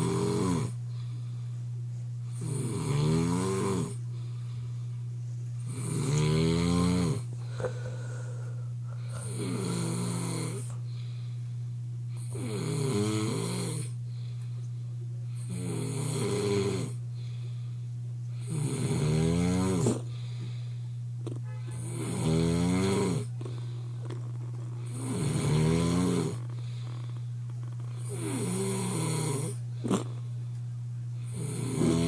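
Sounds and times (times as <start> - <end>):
person snoring loudly: 0.0 - 0.8, 2.3 - 4.0, 5.7 - 10.7, 12.2 - 14.0, 15.4 - 17.0, 18.4 - 20.1, 21.8 - 24.2, 24.8 - 27.2, 27.8 - 30.2, 31.3 - 32.0.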